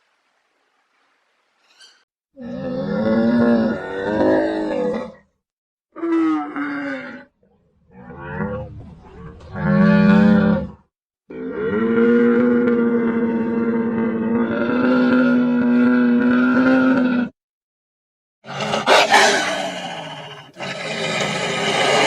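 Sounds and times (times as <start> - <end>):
large animal calling: 18.5 - 22.0.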